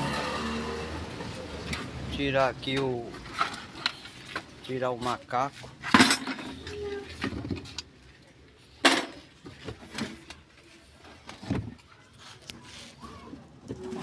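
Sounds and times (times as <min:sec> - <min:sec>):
metal clanks and knocks: 0:05.8 - 0:07.8.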